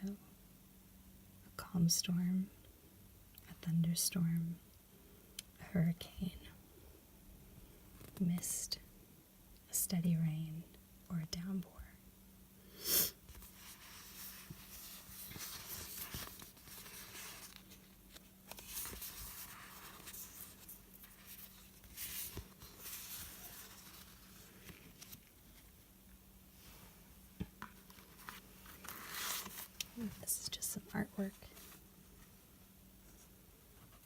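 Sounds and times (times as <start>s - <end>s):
sticker sheets rustling and crinkling: 13.3s - 25.8s, 27.6s - 32.3s.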